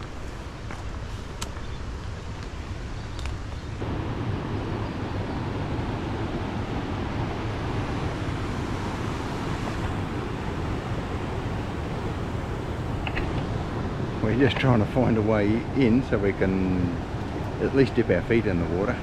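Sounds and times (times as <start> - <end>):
creek water rushing: 3.8 - 19.0.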